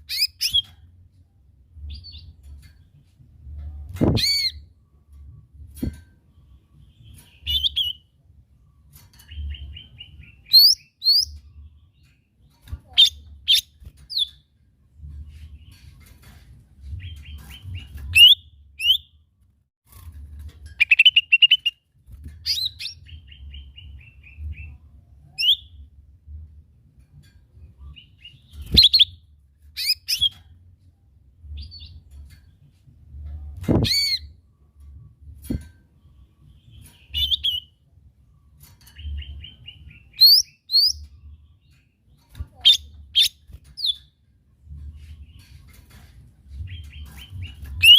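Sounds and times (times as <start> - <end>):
bird singing chirps and trills: 0.0 - 1.0, 6.4 - 14.4, 22.4 - 26.0, 27.6 - 30.4, 36.1 - 37.9, 38.8 - 45.9, 46.5 - 47.9.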